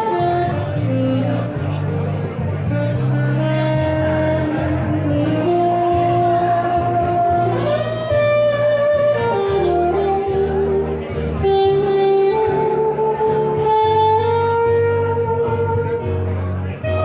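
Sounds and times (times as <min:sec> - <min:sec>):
held melody notes: 0:00.0 - 0:17.0
steady bass line: 0:00.0 - 0:17.0.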